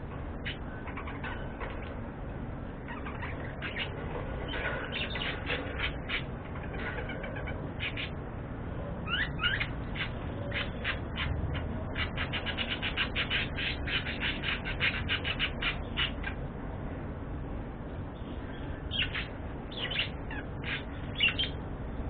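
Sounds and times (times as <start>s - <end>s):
budgerigars chirping: 2.9s - 8.2s, 9.0s - 16.4s, 18.9s - 21.6s.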